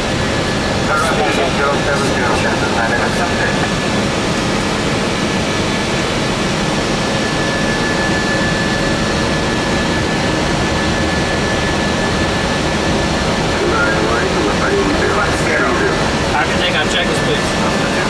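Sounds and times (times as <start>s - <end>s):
jet engine noise: 0.0s - 18.0s
thin steady whine: 13.3s - 18.0s.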